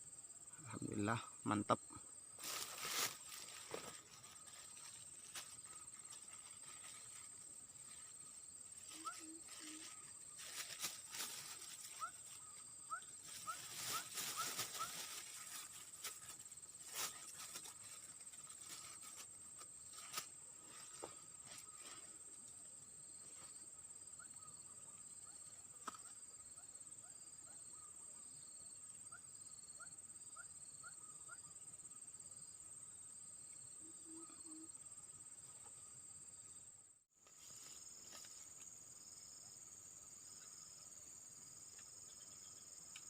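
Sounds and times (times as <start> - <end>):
insect pulsing: 0.0 - 22.4
crickets droning: 0.0 - 43.0.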